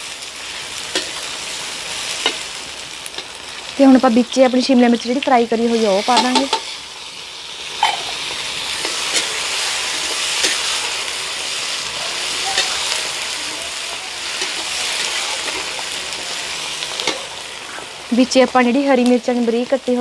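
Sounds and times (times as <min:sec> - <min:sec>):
vegetables sizzling in hot oil: 0:00.0 - 0:20.0
spoon scraping a pan: 0:05.6 - 0:06.9, 0:07.8 - 0:11.1, 0:12.1 - 0:17.9.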